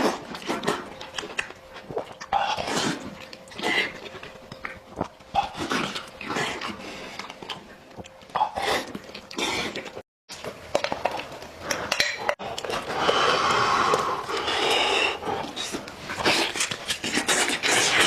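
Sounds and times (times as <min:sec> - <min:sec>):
man chewing and lip smacking: 0:00.0 - 0:18.0.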